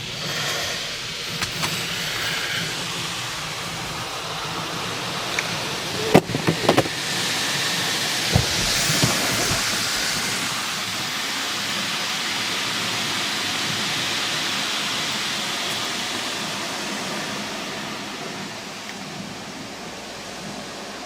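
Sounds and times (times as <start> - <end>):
car wash jets spraying water: 0.0 - 21.0
knocks on car: 8.3 - 9.7.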